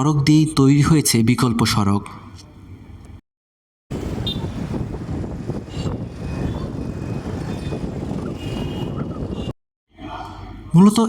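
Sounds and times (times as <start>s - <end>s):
road traffic rumble: 3.9s - 10.7s.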